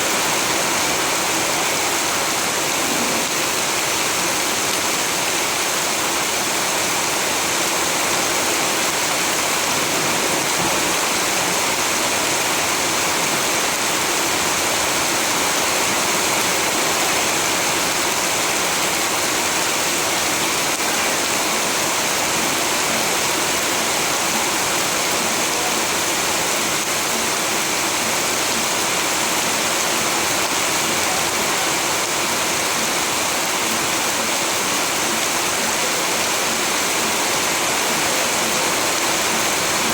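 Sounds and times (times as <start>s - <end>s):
heavy rain hissing: 0.0s - 39.9s.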